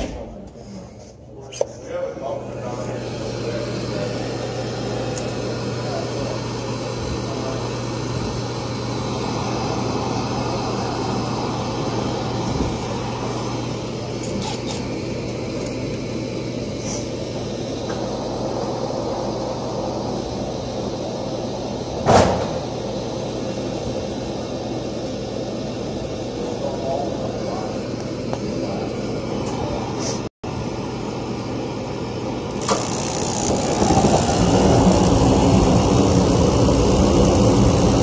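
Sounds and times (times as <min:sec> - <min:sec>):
machinery hum: 0:00.0 - 0:38.0
rushing noise: 0:32.7 - 0:38.0.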